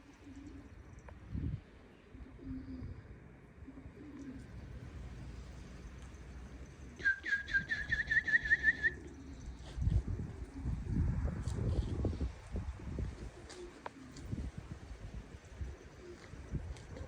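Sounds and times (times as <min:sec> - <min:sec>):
pigeons cooing: 0:00.0 - 0:01.1, 0:02.0 - 0:11.6, 0:12.8 - 0:17.0
short rising whistled notes: 0:07.0 - 0:09.1.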